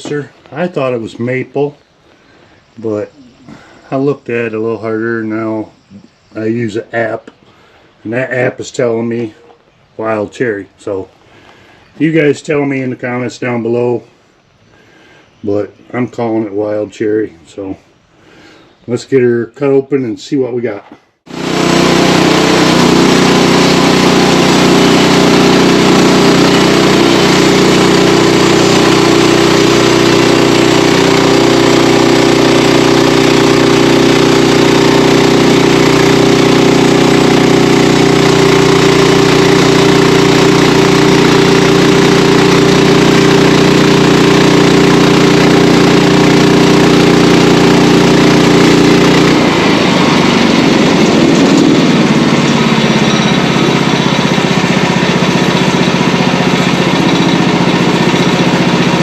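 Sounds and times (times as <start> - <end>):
saw cutting log: 21.3 - 59.0
sawmill engine running: 21.3 - 59.0.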